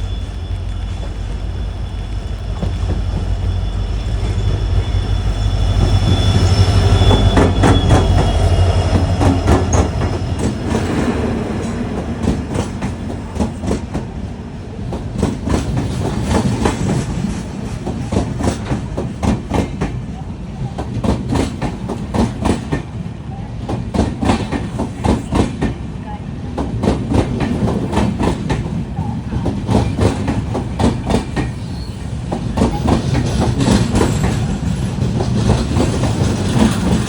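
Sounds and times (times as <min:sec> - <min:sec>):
locomotive engine hum: 0:00.0 - 0:23.7
train wheels clicking over rail joints: 0:00.2 - 0:20.1, 0:20.7 - 0:23.0, 0:23.6 - 0:25.9, 0:26.5 - 0:37.0.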